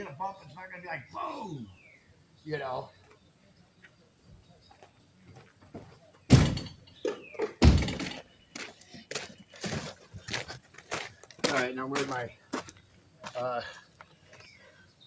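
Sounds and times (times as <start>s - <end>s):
loud heavy thuds: 6.3s - 6.8s, 7.5s - 8.3s.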